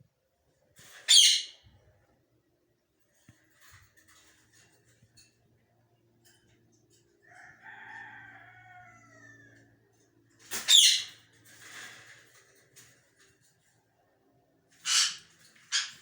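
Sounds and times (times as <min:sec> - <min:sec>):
parrot calling: 0:14.8 - 0:16.0
parrot screech: 0:14.8 - 0:16.0.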